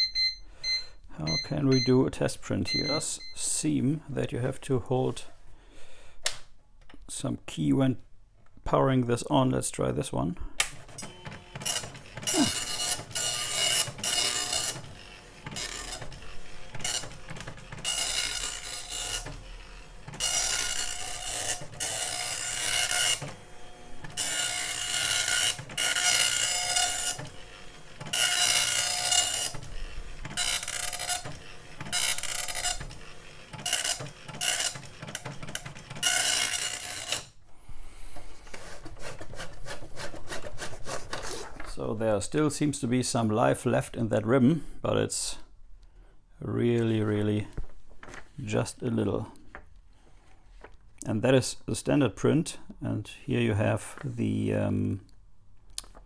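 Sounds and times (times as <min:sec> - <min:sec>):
dot-matrix printer printing: 0:10.7 - 0:37.3.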